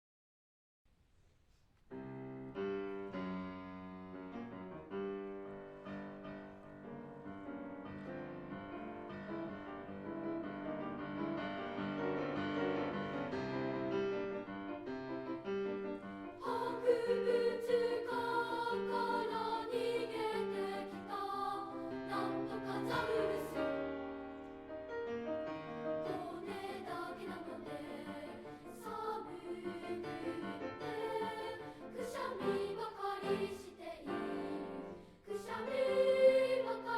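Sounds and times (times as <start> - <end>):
piano accompaniment: 2.0 - 36.9
children's choir singing: 16.3 - 24.4, 25.9 - 36.9.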